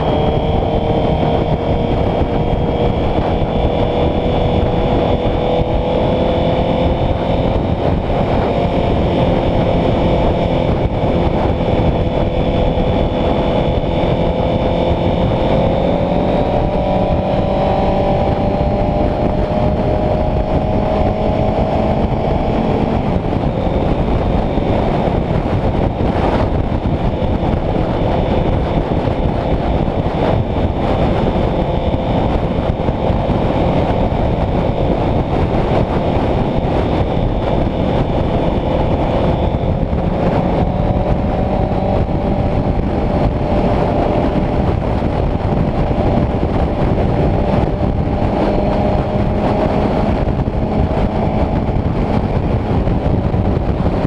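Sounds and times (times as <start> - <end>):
heavy wind rush: 0.0 - 54.0
motorcycle engine running: 0.0 - 54.0.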